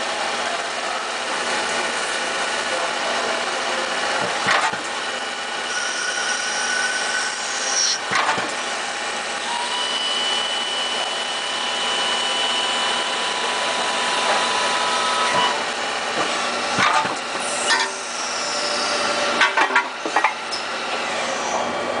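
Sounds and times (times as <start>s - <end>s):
lathe machining plastic: 0.0s - 22.0s
thin whining tones: 5.7s - 8.0s.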